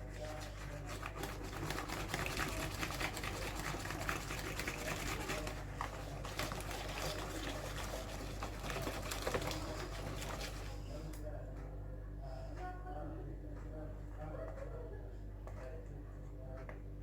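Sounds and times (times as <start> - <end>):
utensil stirring liquid in bowl: 0.0 - 11.4
steady low hum: 0.0 - 17.0.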